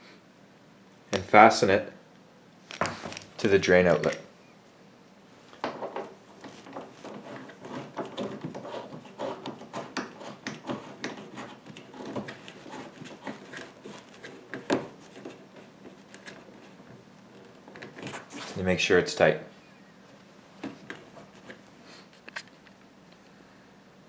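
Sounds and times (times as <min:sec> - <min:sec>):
hose coupling rubbing and clicking: 0:05.6 - 0:18.6.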